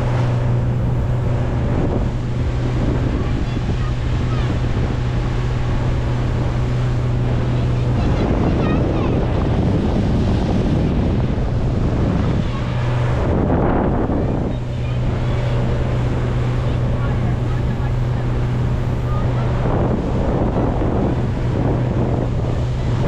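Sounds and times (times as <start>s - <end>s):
boat engine humming: 0.0s - 23.0s
water rushing: 0.0s - 23.0s
wind buffeting microphone: 0.0s - 23.0s.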